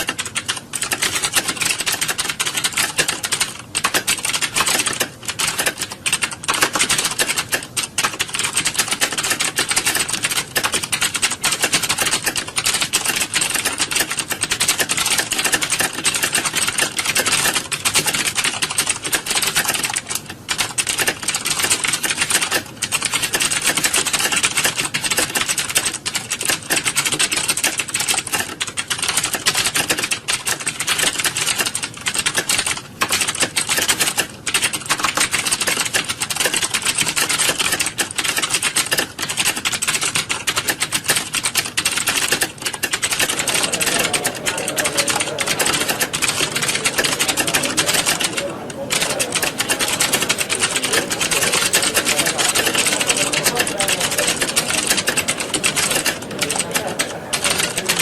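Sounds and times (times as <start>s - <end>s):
many keyboards typing: 0.0s - 58.0s.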